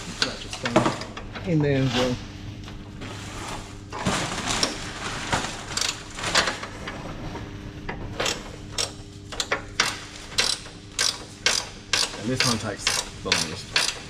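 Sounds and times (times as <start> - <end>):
hand ratchet clicking: 8.2 - 14.0.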